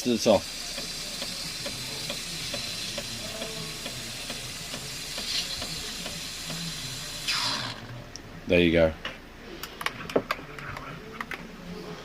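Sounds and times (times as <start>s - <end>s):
milk frother steam hissing: 0.0s - 7.8s.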